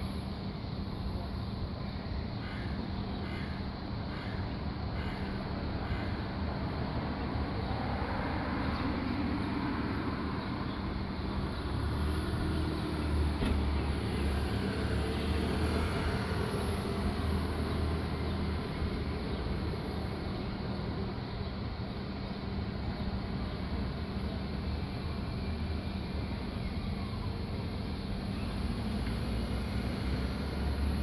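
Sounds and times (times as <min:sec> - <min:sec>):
road traffic rumble: 0:00.0 - 0:31.0.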